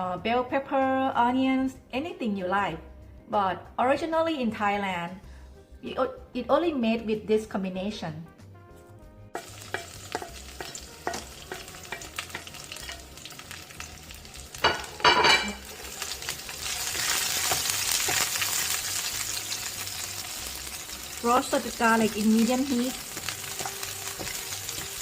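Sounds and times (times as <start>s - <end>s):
utensil clicking against pan: 9.4s - 13.1s
garlic sizzling in oil: 9.4s - 25.0s.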